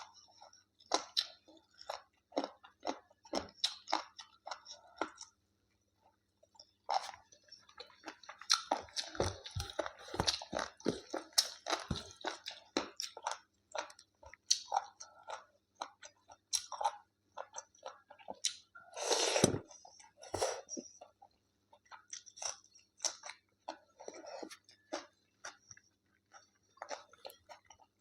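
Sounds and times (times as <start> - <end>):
person chewing and biting food: 6.6 - 21.1.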